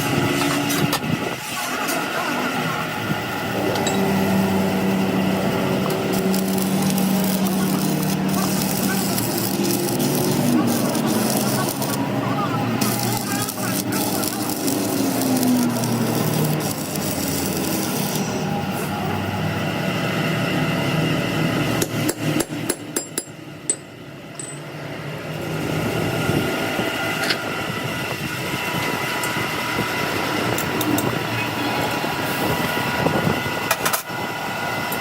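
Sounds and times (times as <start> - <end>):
workshop noise: 0.0 - 35.0
hammer tapping on metal: 21.8 - 24.6.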